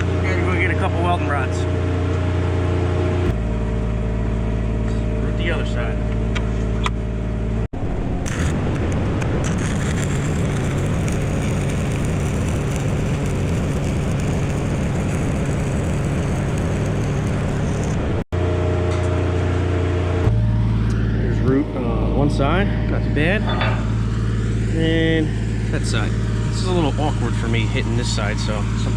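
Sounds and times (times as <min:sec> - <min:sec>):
engine droning: 0:00.0 - 0:28.9
welding arc crackling: 0:07.8 - 0:18.3.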